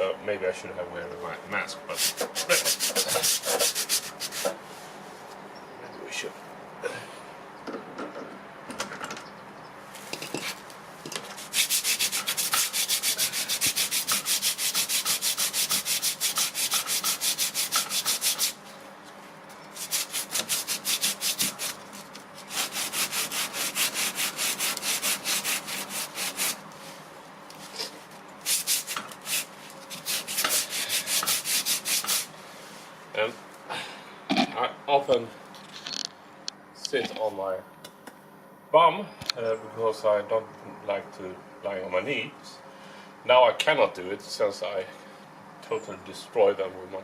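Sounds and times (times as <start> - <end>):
sandpaper rubbing by hand: 2.0 - 4.6, 11.4 - 18.6, 19.8 - 21.8, 22.4 - 27.0, 27.7 - 32.3.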